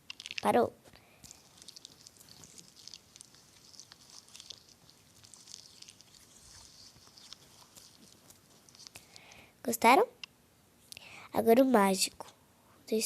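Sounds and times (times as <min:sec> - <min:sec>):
slime sticky clicks and crackles: 0:00.0 - 0:09.3.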